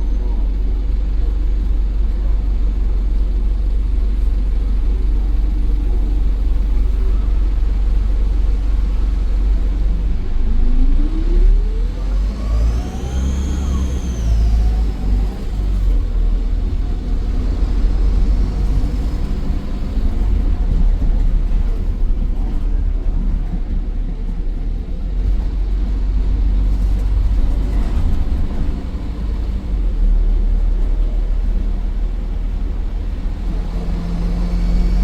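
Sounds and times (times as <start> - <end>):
high turbo whine: 0.0 - 22.0
diesel bus engine rumbling: 0.0 - 35.0.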